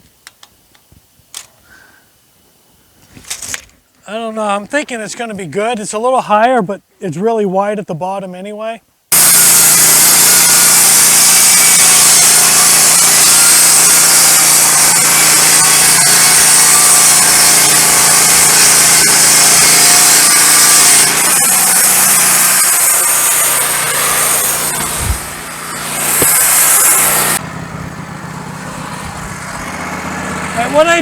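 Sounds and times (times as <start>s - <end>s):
saw blade hissing through wood: 9.1s - 27.4s
band sawmill engine running: 9.2s - 31.0s.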